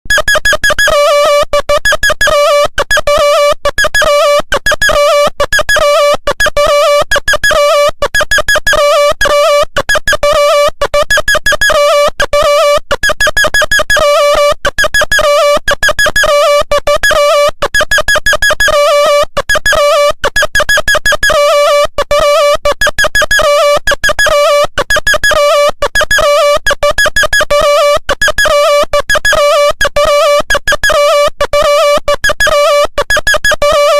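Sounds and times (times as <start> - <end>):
synthesized ringtone melody: 0.1 - 33.9.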